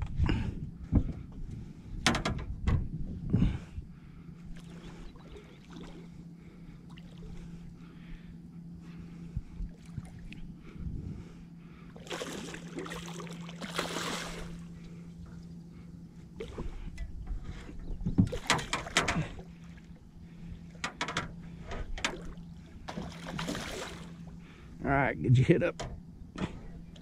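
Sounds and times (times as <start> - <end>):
low steady hum: 0.0 - 27.0
fish splashing at surface: 12.0 - 14.6, 22.9 - 24.1.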